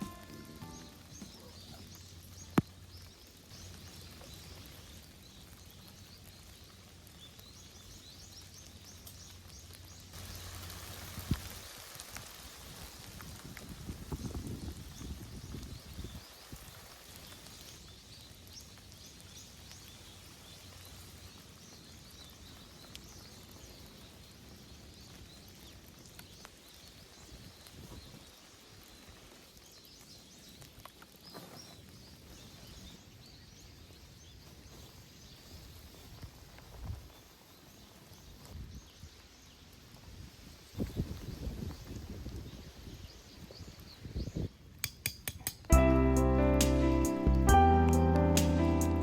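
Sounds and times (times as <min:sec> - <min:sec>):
steady rain: 0:00.0 - 0:31.3, 0:45.7 - 0:49.0
wind: 0:00.0 - 0:49.0.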